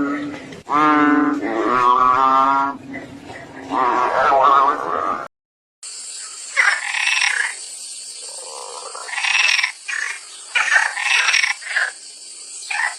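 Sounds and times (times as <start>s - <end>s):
frog croaking: 6.2s - 7.6s, 8.2s - 12.0s, 12.6s - 12.9s.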